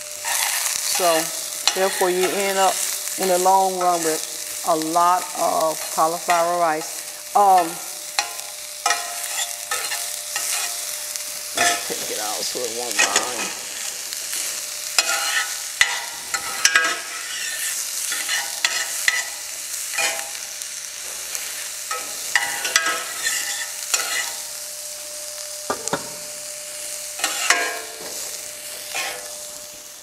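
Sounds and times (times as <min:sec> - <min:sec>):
food sizzling in a skillet: 0:00.0 - 0:30.0
utensil scraping a pan: 0:00.2 - 0:02.8, 0:05.8 - 0:10.9, 0:11.5 - 0:12.2, 0:12.9 - 0:24.5, 0:27.2 - 0:29.5.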